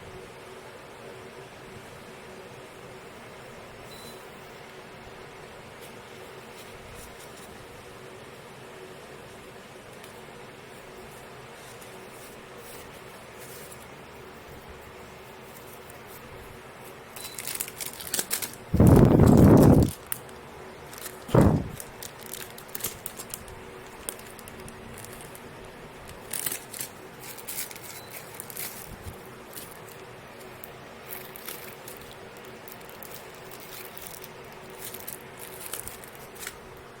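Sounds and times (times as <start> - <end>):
packaging crinkling and tearing: 17.1 - 37.0.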